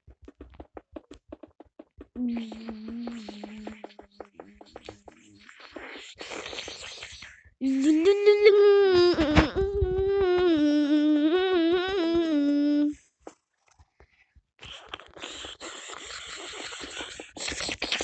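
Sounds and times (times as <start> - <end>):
person humming a wavering note: 2.2 - 4.9, 7.6 - 12.9.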